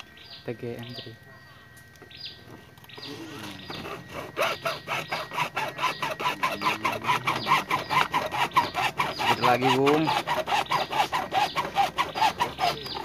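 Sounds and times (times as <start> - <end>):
hacksaw cutting plastic: 3.4 - 13.0.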